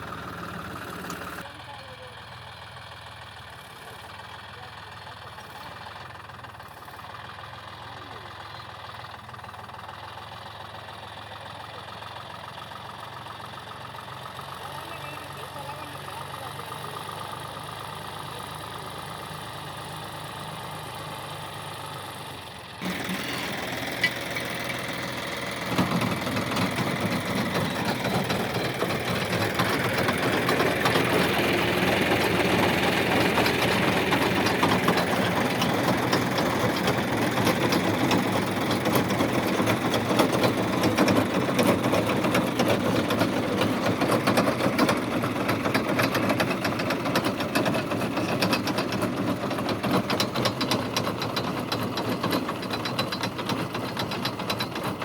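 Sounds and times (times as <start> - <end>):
harvester machinery clattering: 0.0 - 1.9, 2.8 - 55.0
tractor engine running: 0.0 - 55.0
dense rapid rattle: 22.8 - 55.0.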